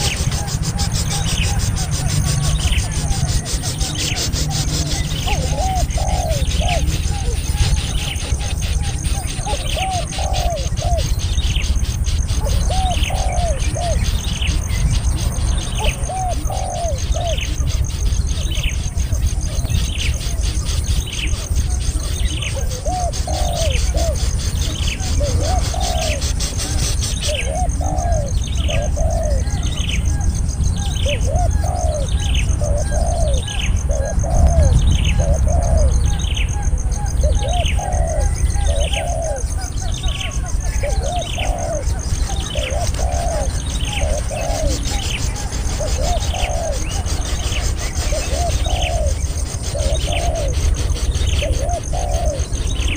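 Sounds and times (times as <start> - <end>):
bird looping notes: 0.0 - 52.9
steady low rumble: 33.3 - 37.7.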